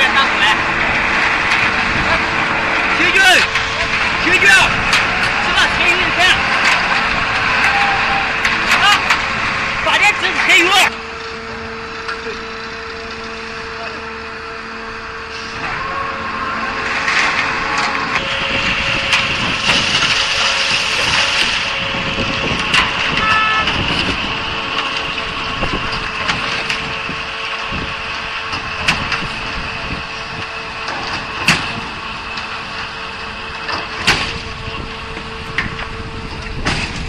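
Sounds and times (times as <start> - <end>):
diesel concrete pump running: 0.0 - 37.0.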